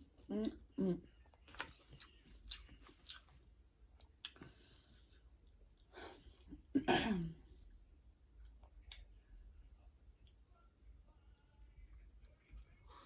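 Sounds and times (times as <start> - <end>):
wet chewing: 1.5 - 3.4.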